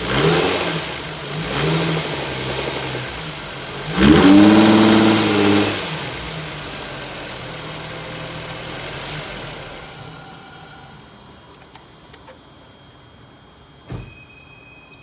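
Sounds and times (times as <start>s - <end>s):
car engine idling and revving: 0.0s - 11.2s.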